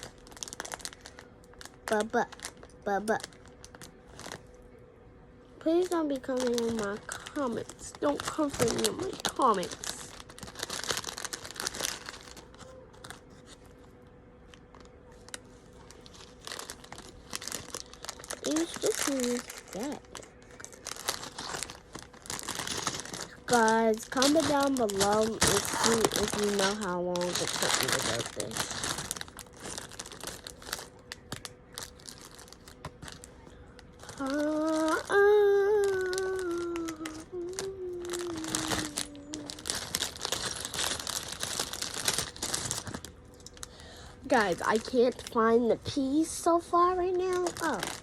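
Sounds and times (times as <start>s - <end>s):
plastic crinkling: 0.0s - 4.6s, 5.6s - 48.0s
long held voice-like note: 34.2s - 39.6s.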